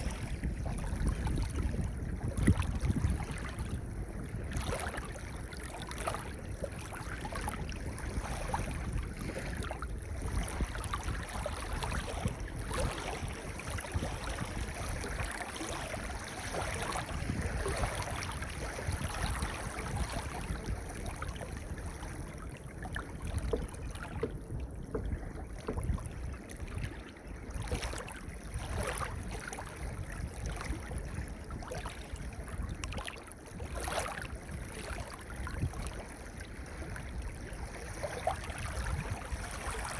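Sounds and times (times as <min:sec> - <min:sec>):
waves washing over pebbles: 0:05.8 - 0:22.0.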